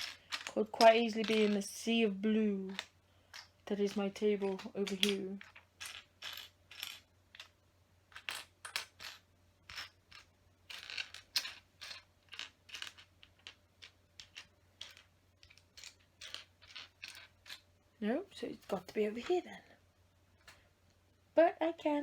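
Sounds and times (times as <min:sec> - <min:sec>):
plastic bricks clicking and rattling: 0:00.0 - 0:01.8, 0:02.7 - 0:17.7.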